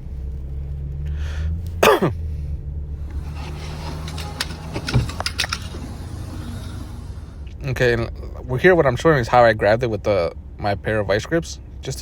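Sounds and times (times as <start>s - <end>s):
steady low hum: 0.0s - 12.0s
metal clicks: 3.0s - 7.3s
hand tools working on engine: 3.0s - 7.5s.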